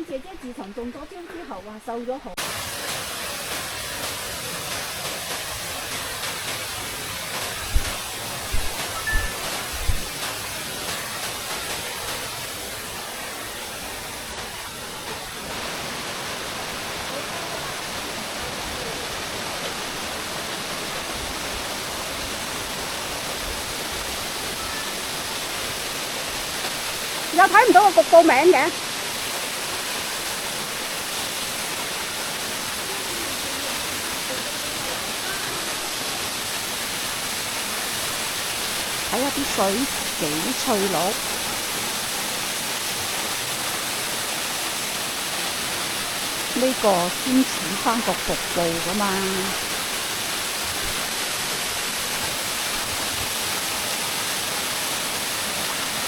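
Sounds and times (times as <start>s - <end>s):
rushing stream water: 0.0s - 56.0s
low thump: 7.7s - 10.1s.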